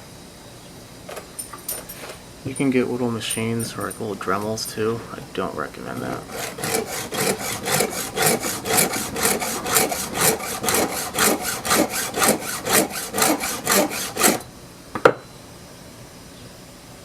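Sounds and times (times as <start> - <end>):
hand file rasping on chain: 3.4 - 14.5.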